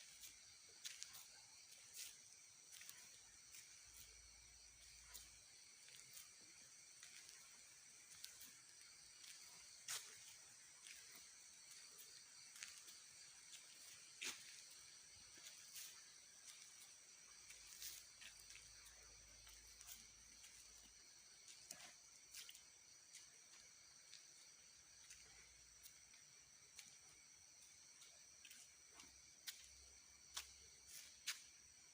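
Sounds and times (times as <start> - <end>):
crickets and insects trilling: 0.0 - 31.9.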